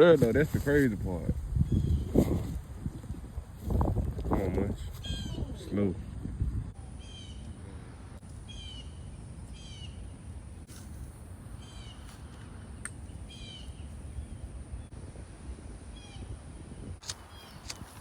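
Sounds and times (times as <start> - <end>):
bird calling: 8.4 - 10.2, 11.6 - 14.4.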